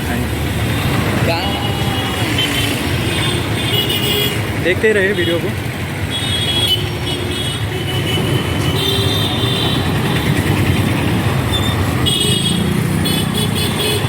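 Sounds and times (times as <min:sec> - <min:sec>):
vehicle engines running: 0:00.0 - 0:14.0
car horn toots: 0:06.1 - 0:10.2.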